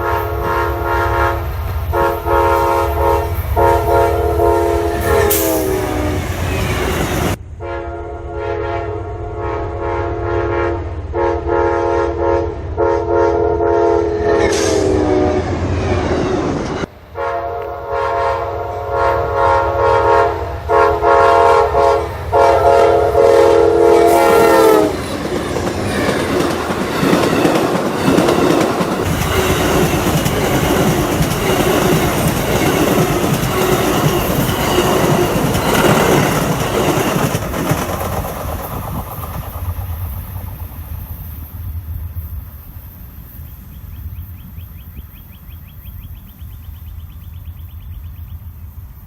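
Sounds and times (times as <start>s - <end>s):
train wheels clacking over rail joints: 24.0s - 40.8s.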